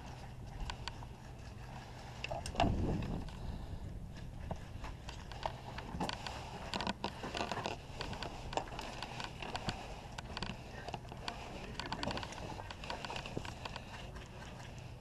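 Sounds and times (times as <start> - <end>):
wind rumble on microphone: 2.2 - 14.0
gear and gun rattling: 4.4 - 15.0.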